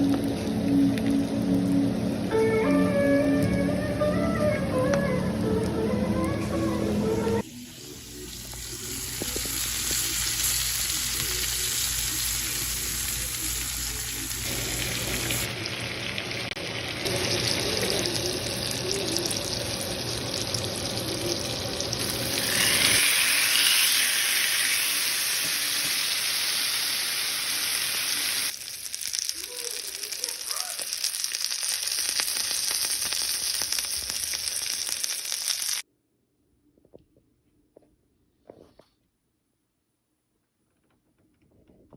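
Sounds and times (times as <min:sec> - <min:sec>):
steak sizzling: 0:06.9 - 0:35.8.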